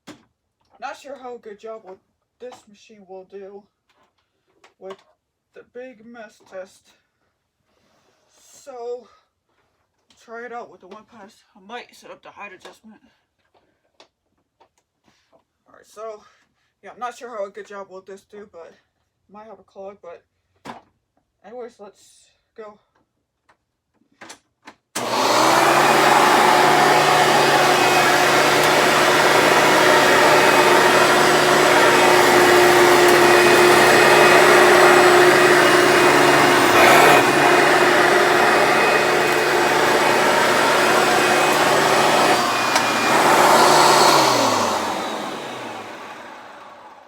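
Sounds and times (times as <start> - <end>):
vacuum cleaner running: 25.0 - 47.0
vacuum motor winding down: 25.0 - 47.0.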